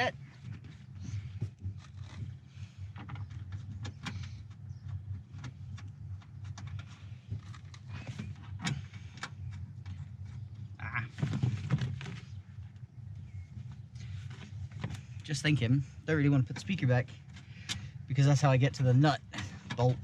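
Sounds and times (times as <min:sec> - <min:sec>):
steady low hum: 0:00.0 - 0:20.0
car door parts clicking and rattling: 0:00.4 - 0:12.8, 0:19.2 - 0:20.0.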